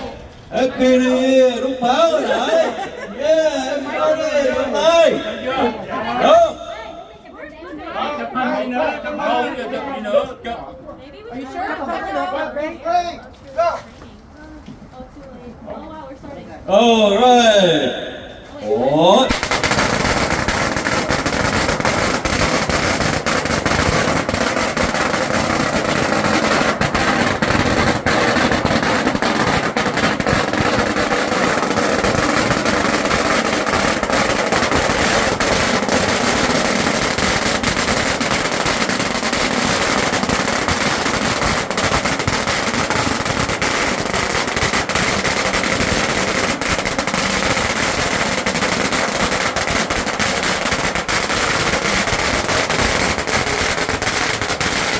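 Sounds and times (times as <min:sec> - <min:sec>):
firecrackers crackling: 0:00.1 - 0:07.6, 0:16.8 - 0:54.9.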